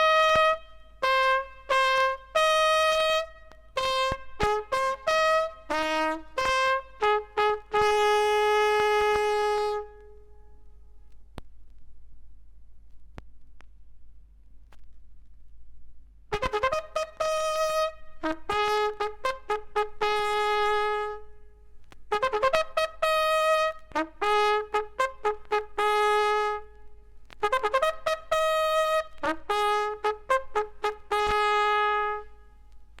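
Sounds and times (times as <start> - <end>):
military bugle call: 0.0 - 10.4, 16.3 - 32.7
faint record noise: 0.0 - 33.0.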